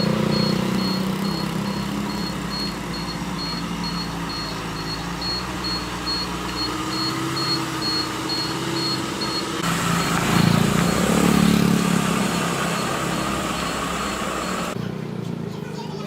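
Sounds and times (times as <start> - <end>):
faint high-pitched beeping: 0.0 - 10.6
pickup truck engine revving: 0.0 - 15.5.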